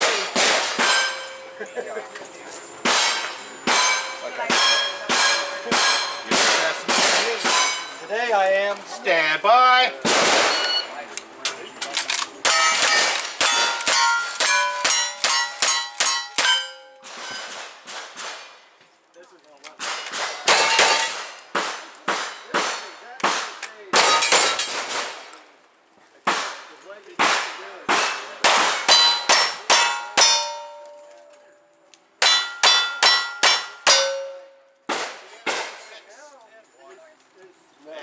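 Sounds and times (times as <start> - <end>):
gunshots: 0.0 - 1.2, 2.9 - 7.8, 10.0 - 10.8
steel plate ringing clang: 0.0 - 8.3, 10.1 - 11.0, 12.4 - 17.6, 19.9 - 21.4, 24.0 - 25.0, 28.0 - 31.6, 32.2 - 34.7.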